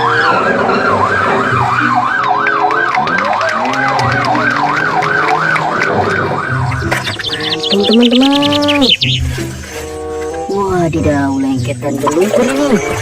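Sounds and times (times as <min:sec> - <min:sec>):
police siren wailing: 0:00.0 - 0:09.3.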